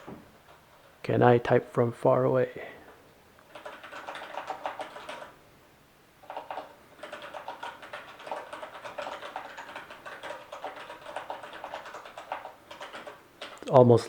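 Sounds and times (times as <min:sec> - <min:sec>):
mechanical keyboard typing: 0:03.4 - 0:05.4, 0:06.2 - 0:13.9.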